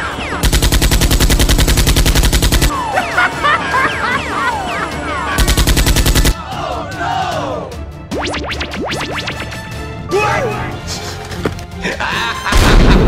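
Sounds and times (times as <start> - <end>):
automatic gunfire bursts: 0.4 - 2.7, 5.4 - 6.4.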